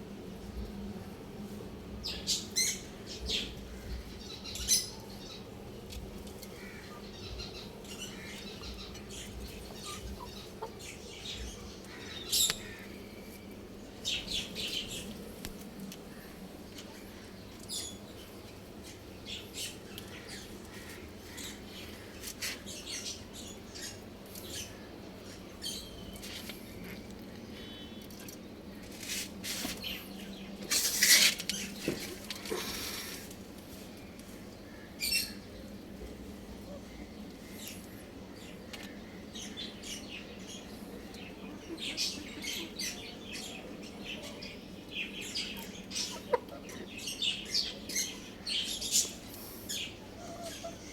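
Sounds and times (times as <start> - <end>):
chickens chirping and squawking: 6.2 - 15.3, 40.3 - 50.9.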